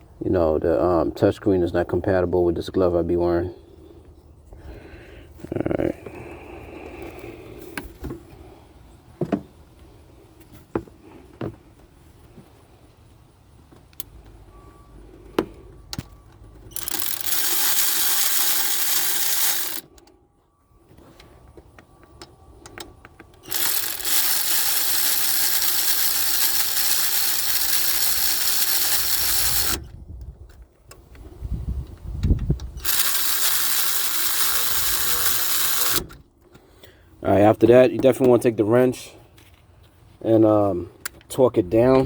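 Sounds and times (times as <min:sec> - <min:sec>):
power tool driving a bolt: 0:15.4 - 0:20.1, 0:23.4 - 0:30.0, 0:32.2 - 0:36.2.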